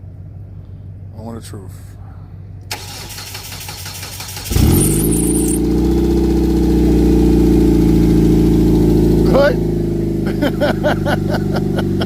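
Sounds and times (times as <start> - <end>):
car engine idling: 0.0 - 12.0
car engine cranking on starter: 2.7 - 6.3.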